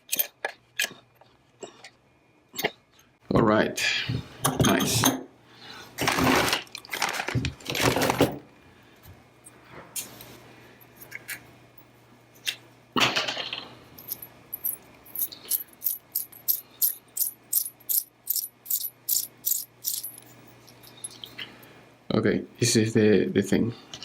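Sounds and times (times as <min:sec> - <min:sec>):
metal parts clattering: 0:13.1 - 0:21.3.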